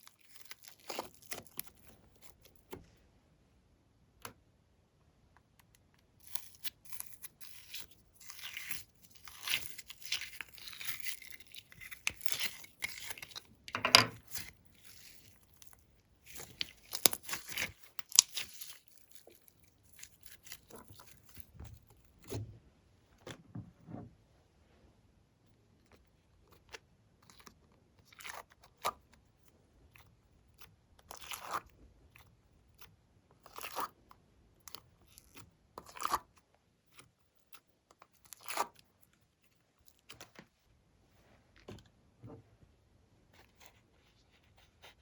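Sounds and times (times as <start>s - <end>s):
slime crackling and popping: 6.2s - 13.4s, 14.2s - 21.9s.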